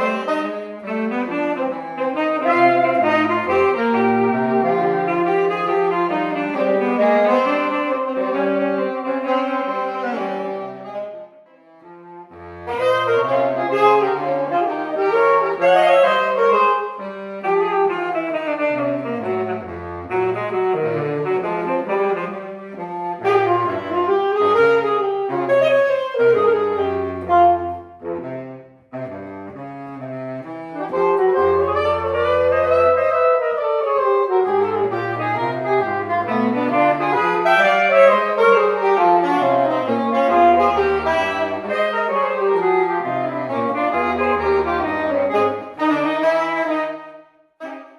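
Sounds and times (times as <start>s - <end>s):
saxophone fast melody: 0.0s - 47.9s
double bass line: 2.0s - 7.2s, 26.3s - 46.0s.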